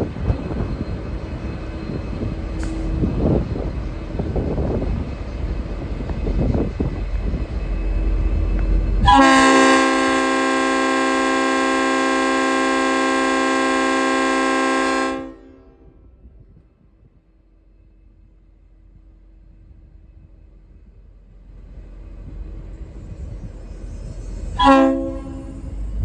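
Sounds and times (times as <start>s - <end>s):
diesel locomotive rumbling: 0.0s - 26.0s
locomotive air horn chord: 9.0s - 16.0s, 24.6s - 25.9s.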